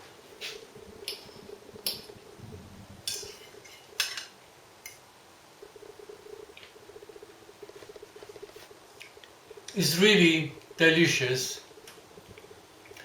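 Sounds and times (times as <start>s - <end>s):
cutlery scraping a plate: 3.1s - 4.3s.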